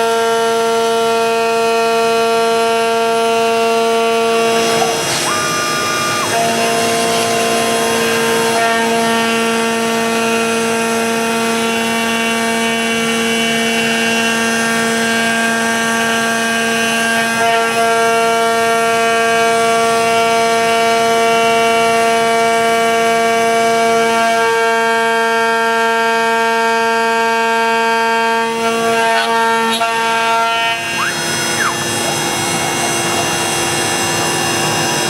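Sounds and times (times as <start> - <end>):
router spindle milling wood: 3.9 - 14.8, 28.4 - 35.0.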